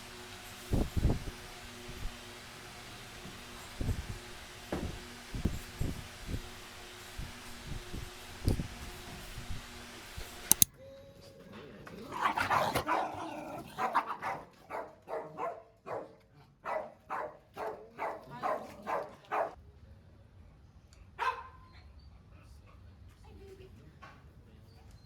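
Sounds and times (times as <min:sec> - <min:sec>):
sharp clicks: 0:10.4 - 0:10.7
dog barking: 0:12.2 - 0:19.6, 0:21.2 - 0:21.7.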